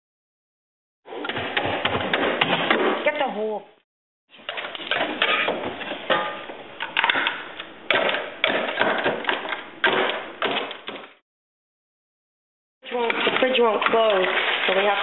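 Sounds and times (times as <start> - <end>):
ice being chipped: 12.9 - 15.0.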